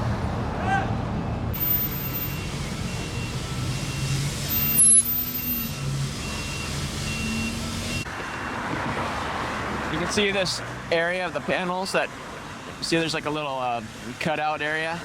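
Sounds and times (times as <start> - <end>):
reversing alarm beeping: 1.6 - 8.6.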